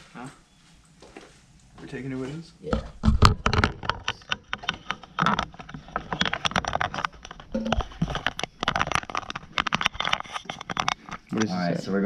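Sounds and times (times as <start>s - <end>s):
gear clattering and rustling: 3.0s - 11.6s.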